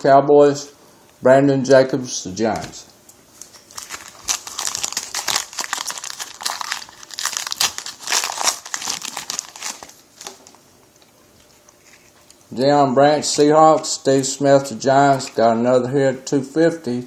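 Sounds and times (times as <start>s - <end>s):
plastic wrapper crinkling: 3.3s - 12.5s.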